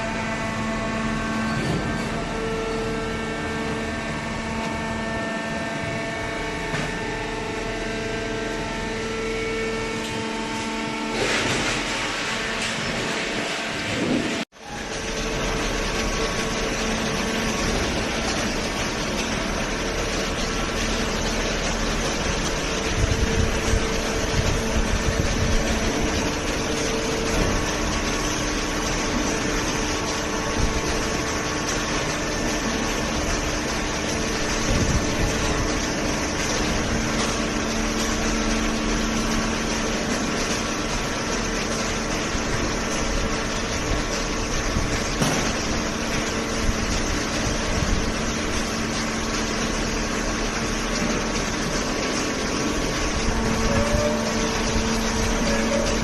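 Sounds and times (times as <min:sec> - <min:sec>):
baler machine hum: 0:00.0 - 0:56.0.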